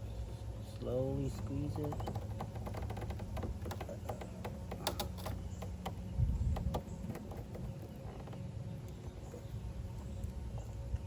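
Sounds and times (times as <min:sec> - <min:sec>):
dull low thud: 0:05.4 - 0:08.1.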